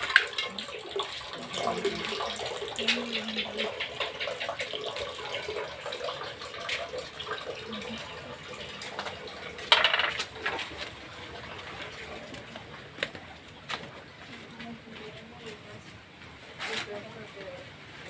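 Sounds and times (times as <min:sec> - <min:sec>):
clinks and knocks of hard objects: 0:09.7 - 0:10.8.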